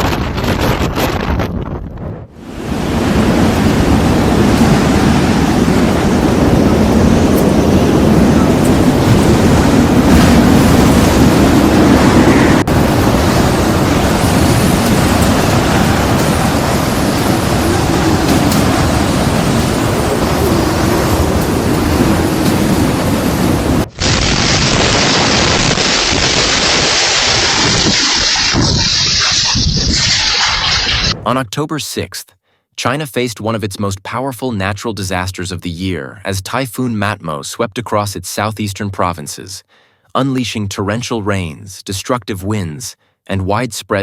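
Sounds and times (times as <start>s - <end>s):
typhoon wind roaring: 0.0s - 26.4s
surging water: 2.4s - 23.9s
heavy rain: 2.4s - 31.2s.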